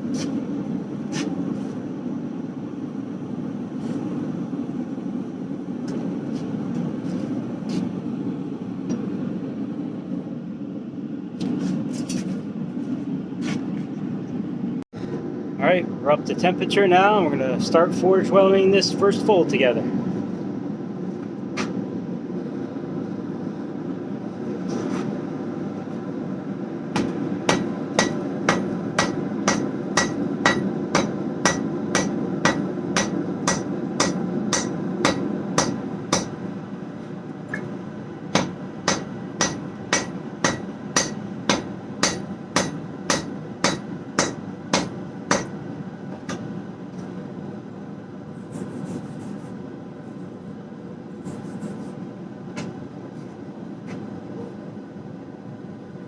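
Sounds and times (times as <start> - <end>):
hammer striking hot steel on anvil: 26.9 - 36.4, 38.3 - 45.6, 46.2 - 46.5.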